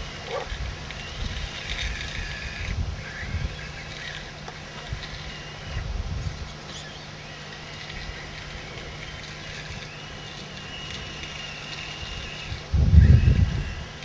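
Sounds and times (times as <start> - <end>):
small electric motors whining: 0.0 - 14.0
low rumble on microphone: 12.5 - 14.0.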